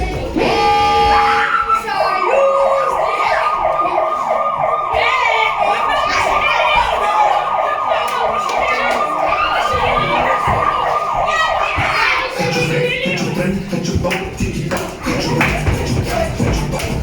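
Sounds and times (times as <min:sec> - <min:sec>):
faint voices: 0:00.0 - 0:17.0
siren yelp wail: 0:00.4 - 0:12.4.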